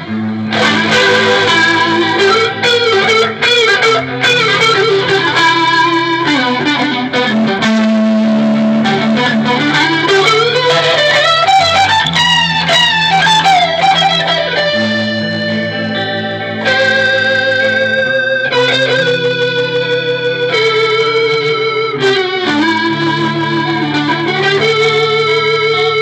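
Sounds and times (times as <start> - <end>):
electric guitar lead lines: 0.0 - 26.0.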